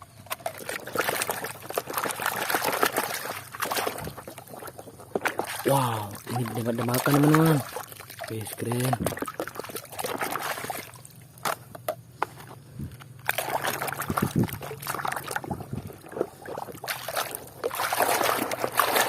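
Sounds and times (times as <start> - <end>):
water sloshing and trickling: 0.0 - 19.0.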